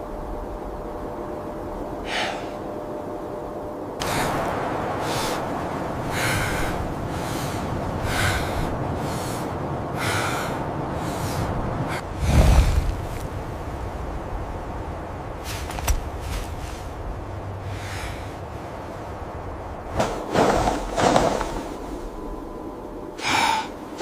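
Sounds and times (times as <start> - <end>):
steady low rumble: 0.0 - 24.0
heavy rhythmic breathing: 23.2 - 24.0.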